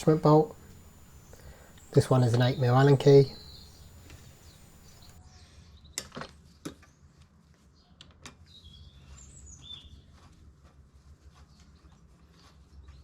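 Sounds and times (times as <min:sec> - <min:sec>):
faint high chirps: 0:00.0 - 0:05.2.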